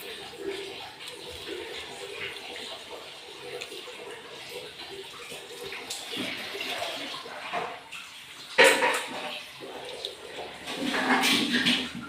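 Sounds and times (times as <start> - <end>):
wet eating and slurping: 0.0 - 12.0.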